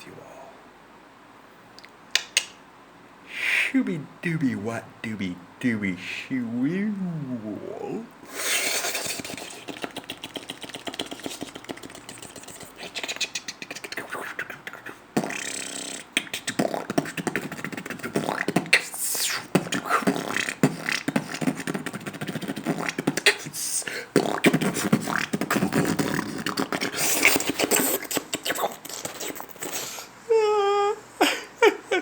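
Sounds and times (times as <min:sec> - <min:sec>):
man beatboxing: 0:03.7 - 0:30.0.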